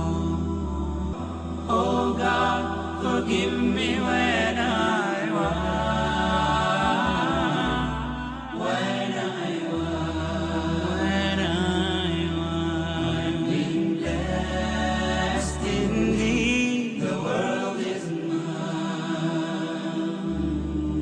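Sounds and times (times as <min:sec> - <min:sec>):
low drone: 0:00.0 - 0:16.6
person singing chant-like melody: 0:00.0 - 0:21.0.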